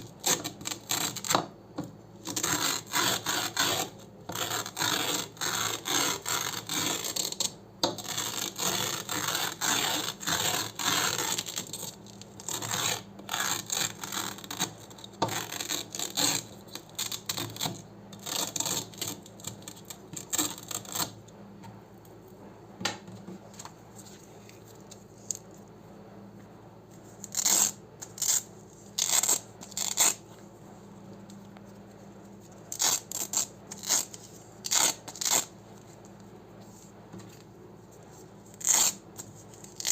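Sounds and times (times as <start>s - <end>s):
velcro tearing: 0.0s - 1.4s, 2.2s - 21.2s, 27.2s - 30.2s, 32.7s - 35.5s, 38.5s - 39.9s.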